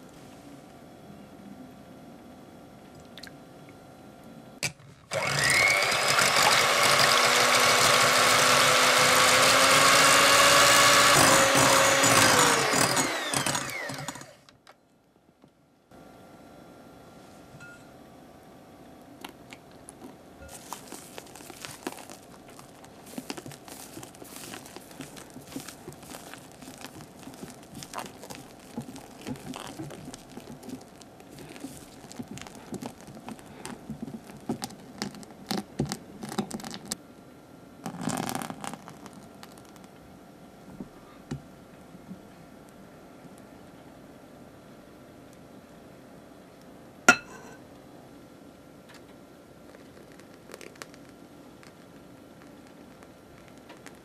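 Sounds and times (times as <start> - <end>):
electric hand mixer whipping: 5.1 - 14.4
faint crackling and ticking: 19.2 - 37.0, 49.7 - 54.0.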